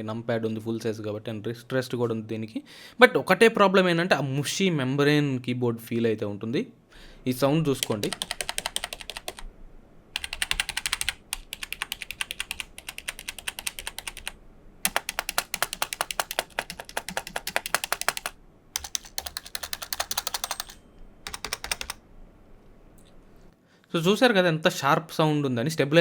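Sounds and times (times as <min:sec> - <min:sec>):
fast typing on keyboard: 0:07.7 - 0:09.5, 0:10.2 - 0:22.0
keyboard stabilizers rattling: 0:14.9 - 0:22.0.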